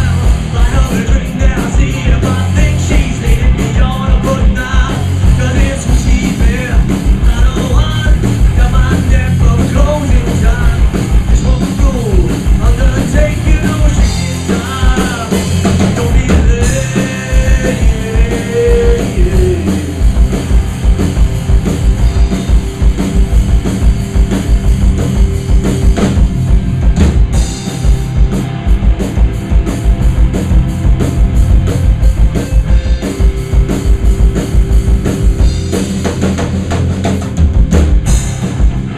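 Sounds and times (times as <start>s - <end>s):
drum kit beat: 0.0s - 38.9s
loud rock music: 0.0s - 38.9s.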